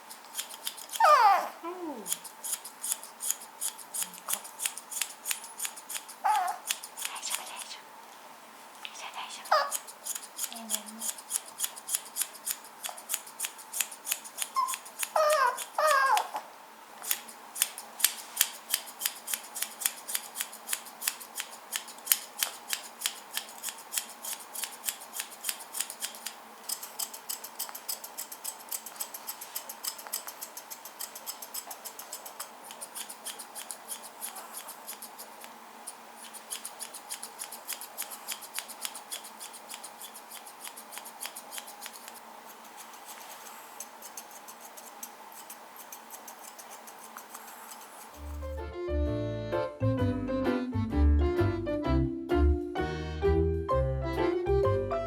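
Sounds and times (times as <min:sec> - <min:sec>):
scissors snipping hair: 0:00.0 - 0:01.4, 0:02.0 - 0:07.7, 0:09.5 - 0:16.3, 0:17.0 - 0:48.4
high-pitched voice-like sounds: 0:01.0 - 0:02.1.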